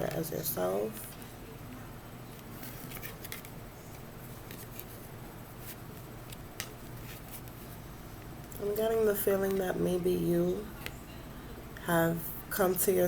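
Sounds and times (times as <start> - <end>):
low room hum: 0.0 - 13.0
cards clicking and rustling: 2.4 - 5.0.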